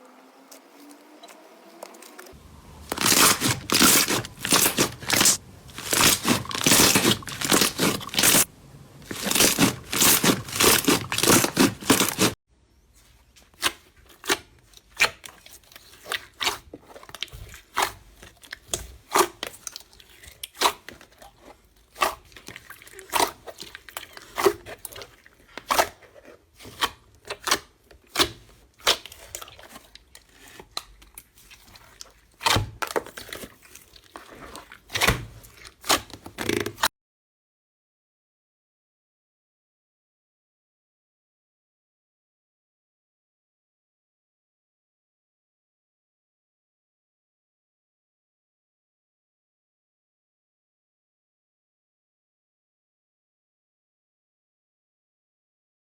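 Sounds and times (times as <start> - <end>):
slime crackling and popping: 2.8 - 12.4.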